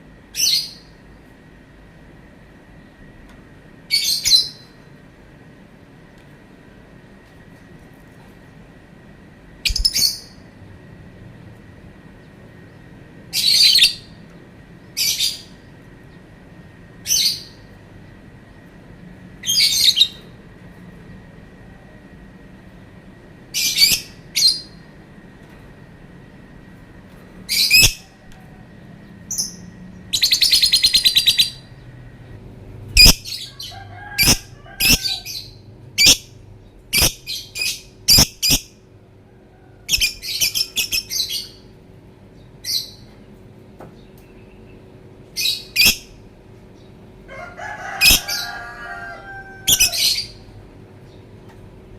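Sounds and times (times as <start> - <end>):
bird chirping shrilly: 9.7 - 10.4, 33.0 - 36.3, 37.0 - 38.7.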